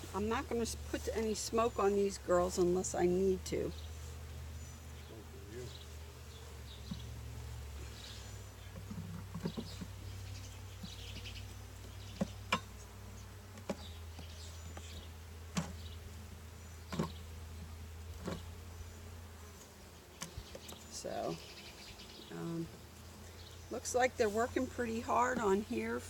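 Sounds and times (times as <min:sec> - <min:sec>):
honeybees buzzing: 0:00.0 - 0:26.0.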